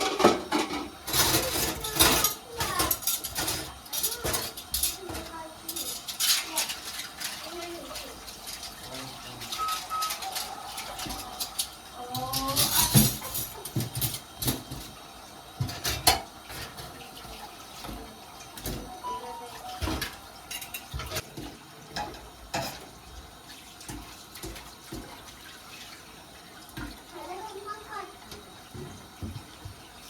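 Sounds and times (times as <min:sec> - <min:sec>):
kitchenware clinking and knocking: 0:00.0 - 0:07.4, 0:08.3 - 0:15.0, 0:15.6 - 0:17.0, 0:19.6 - 0:23.0.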